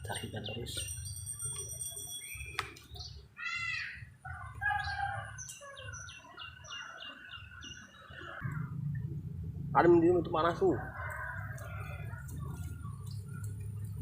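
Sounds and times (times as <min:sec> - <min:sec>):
birds chirping: 0:00.0 - 0:14.0
low steady rumble: 0:08.4 - 0:14.0.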